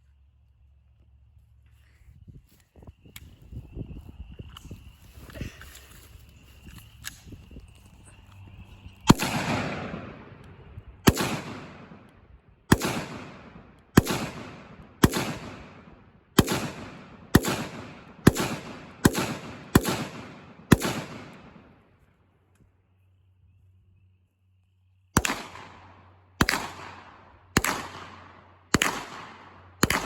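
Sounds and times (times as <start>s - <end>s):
echoing gunshots: 9.1s - 21.8s, 25.2s - 30.0s.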